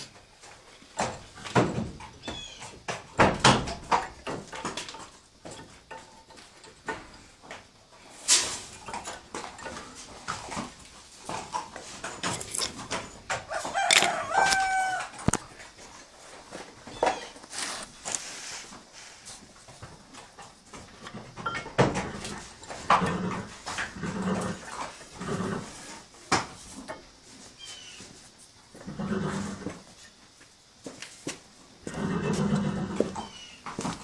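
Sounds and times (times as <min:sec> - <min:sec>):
rooster crowing: 0:13.4 - 0:15.4.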